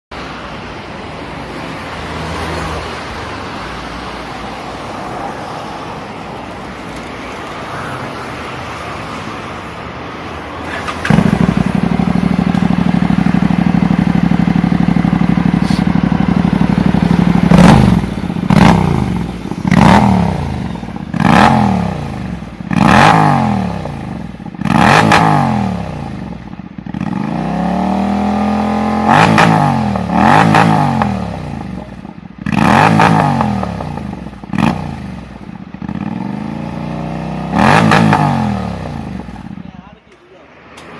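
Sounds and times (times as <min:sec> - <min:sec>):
motorcycle engine revving: 0:10.6 - 0:39.8.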